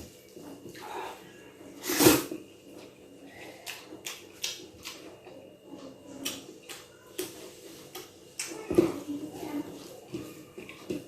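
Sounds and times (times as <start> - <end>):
chewing and mouth noises: 3.4 - 7.3.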